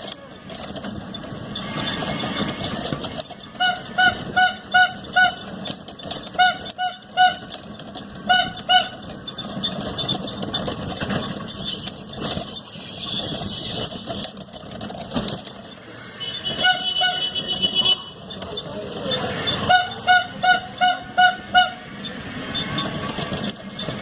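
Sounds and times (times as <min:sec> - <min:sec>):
street traffic noise: 0:00.0 - 0:24.0
vehicle horn tooting: 0:01.6 - 0:03.0, 0:03.6 - 0:05.5, 0:06.3 - 0:07.5, 0:08.3 - 0:09.0, 0:15.9 - 0:18.2, 0:19.4 - 0:21.9.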